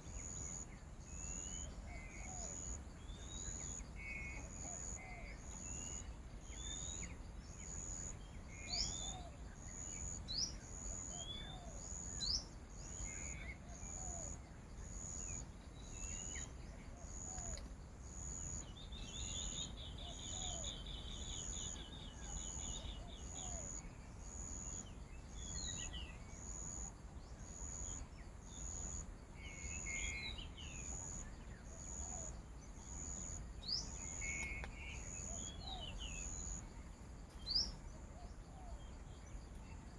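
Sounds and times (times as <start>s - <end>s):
insect pulsing call: 0.0s - 39.9s
small birds chirping: 29.7s - 39.9s.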